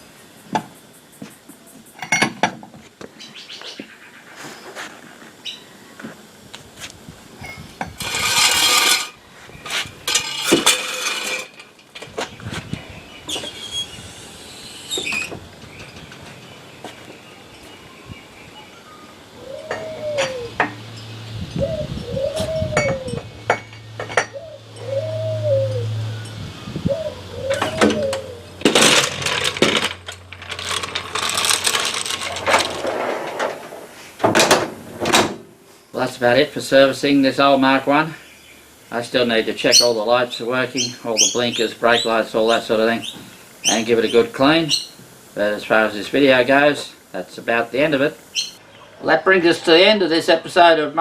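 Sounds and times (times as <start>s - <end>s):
tools clinking and knocking: 2.0s - 2.7s, 7.4s - 12.3s, 22.8s - 24.9s, 27.5s - 34.6s
metal scraping and rubbing: 7.6s - 11.8s, 27.5s - 34.2s.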